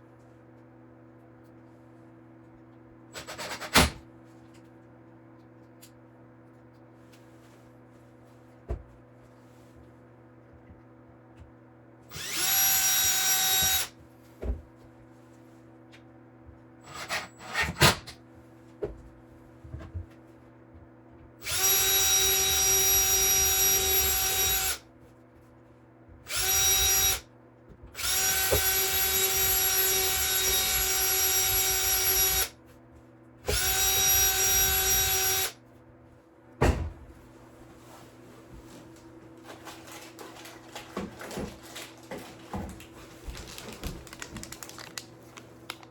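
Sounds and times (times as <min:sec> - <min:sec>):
electric drill whining: 0:12.1 - 0:13.9, 0:21.4 - 0:24.8, 0:26.3 - 0:27.2, 0:28.0 - 0:32.5, 0:33.5 - 0:35.5.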